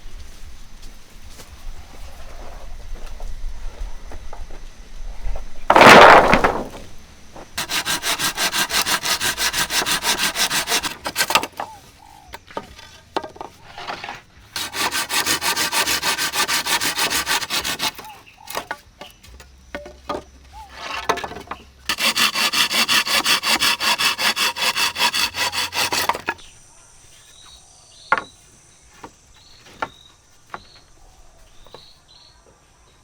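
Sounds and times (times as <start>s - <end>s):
loud short crack: 5.7s - 7.0s
hand saw cutting wood: 7.6s - 11.8s, 13.6s - 18.8s, 21.9s - 26.4s
small knocks: 11.0s - 14.1s, 18.5s - 22.1s, 28.1s - 31.0s.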